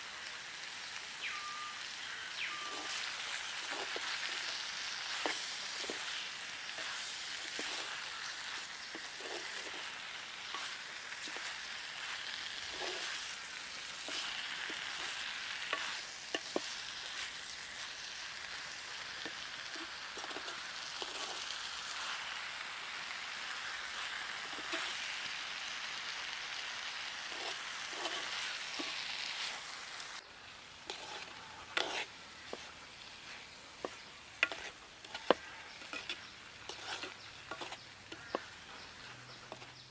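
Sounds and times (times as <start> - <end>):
pineapple sizzling in a pan: 0.0 - 39.9
spoon clicking and scraping pan: 2.5 - 17.4, 19.2 - 21.5, 27.2 - 29.0, 30.8 - 39.8.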